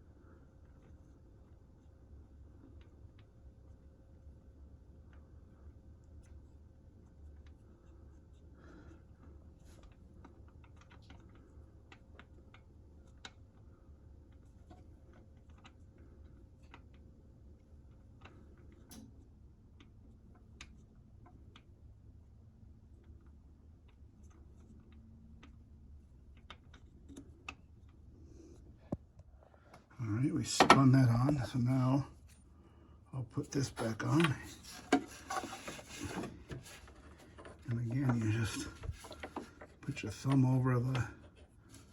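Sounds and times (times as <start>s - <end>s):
faint small clicks and scrapes: 0.2s - 29.9s, 30.6s - 41.9s.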